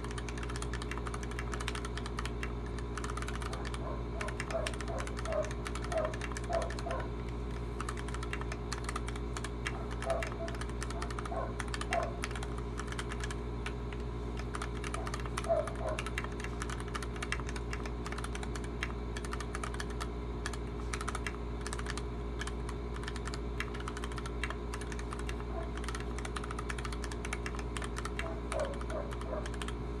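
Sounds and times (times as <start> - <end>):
fast typing on mechanical keyboard: 0.0 - 29.8
steady low hum: 0.0 - 30.0.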